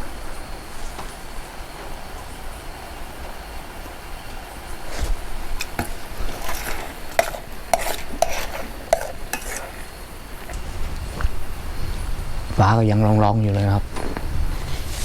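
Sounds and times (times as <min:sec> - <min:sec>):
spatula scraping a pan: 0:04.9 - 0:10.1
vegetables stir-frying in a pan: 0:05.6 - 0:10.2.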